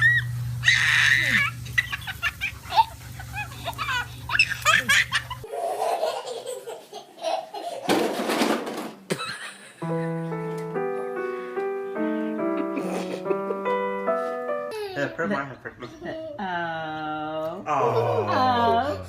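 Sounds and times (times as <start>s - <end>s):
baby laughing: 0.0s - 8.0s, 14.7s - 16.4s
keyboard melody: 9.8s - 15.2s.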